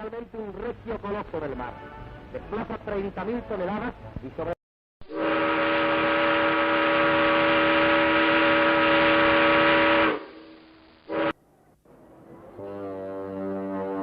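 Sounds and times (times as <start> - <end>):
ship's horn blasts: 5.0 - 11.4, 12.5 - 14.0.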